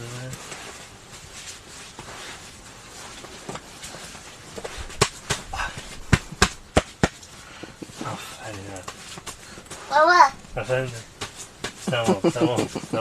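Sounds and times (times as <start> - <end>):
low background hiss: 0.0 - 13.0
sharp knocks: 4.9 - 7.9.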